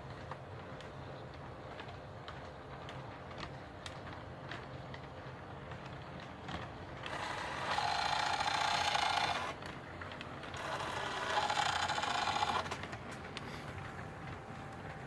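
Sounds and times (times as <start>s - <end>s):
model locomotive rasping whine: 6.9s - 15.0s.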